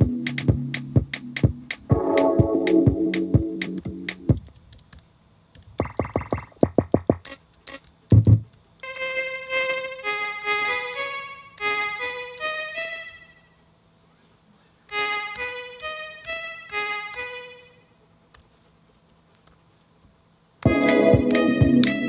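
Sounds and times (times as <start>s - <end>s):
synthesizer melody with vibrato: 0.0s - 4.3s, 8.8s - 13.5s, 14.9s - 17.9s, 20.7s - 22.0s.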